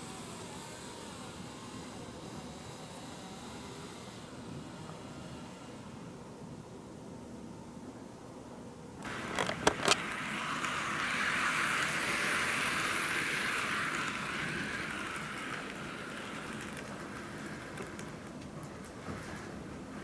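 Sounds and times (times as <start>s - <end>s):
model train rolling whirr: 0.0s - 7.0s, 9.0s - 20.0s
sharp clicks: 9.3s - 11.1s.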